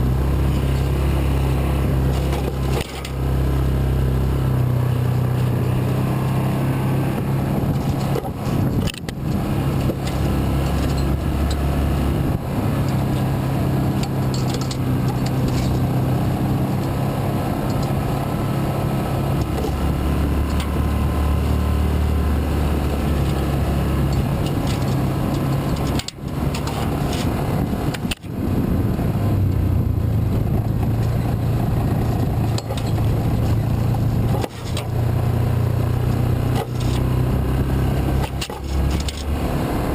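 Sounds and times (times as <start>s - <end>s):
vehicle engine running: 0.0s - 39.9s
vehicle knocks and rattles: 1.9s - 3.2s, 7.2s - 18.0s, 22.8s - 28.4s, 30.2s - 35.5s, 38.0s - 39.4s.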